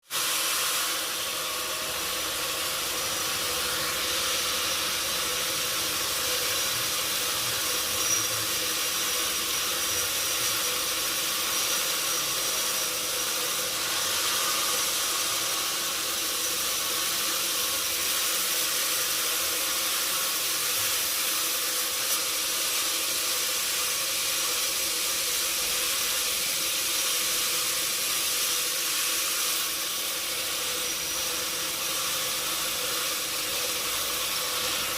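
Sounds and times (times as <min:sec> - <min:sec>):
sawmill machinery hiss: 0:00.0 - 0:34.9.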